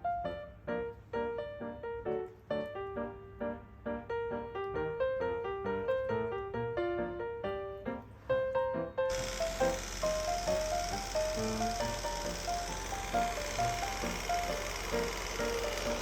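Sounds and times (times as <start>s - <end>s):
light keyboard melody: 0.0s - 16.0s
steady hiss: 9.1s - 16.0s.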